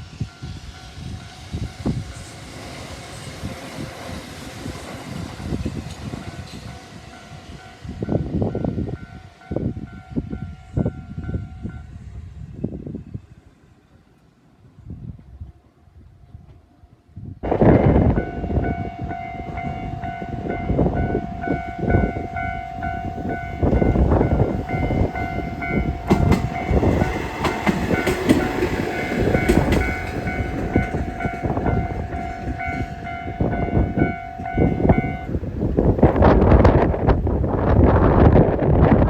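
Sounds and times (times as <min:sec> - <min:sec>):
level-crossing alarm dinging: 0:17.4 - 0:35.4
train wheels clacking on rails: 0:17.5 - 0:36.9.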